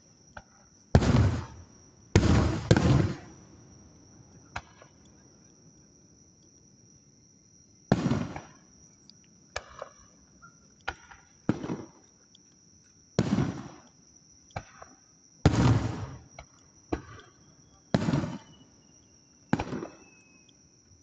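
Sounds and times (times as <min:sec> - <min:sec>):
small firework pops: 0:00.3 - 0:03.4, 0:04.3 - 0:05.2, 0:07.9 - 0:08.8, 0:09.5 - 0:10.2, 0:10.8 - 0:12.2, 0:13.2 - 0:20.6
firework shells booming: 0:00.4 - 0:03.6, 0:04.5 - 0:05.0, 0:07.9 - 0:08.7, 0:10.9 - 0:12.0, 0:13.2 - 0:13.8, 0:14.6 - 0:18.6, 0:19.5 - 0:20.3.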